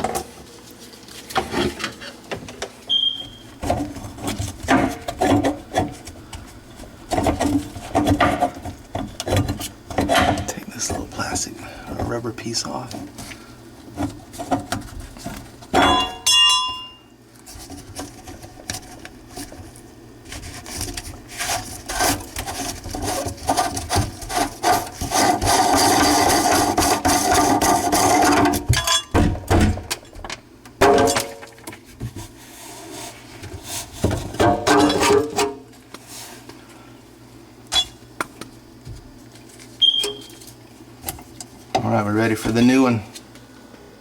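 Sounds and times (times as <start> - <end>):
scraping and knocking on sink fittings: 21.5 - 29.1.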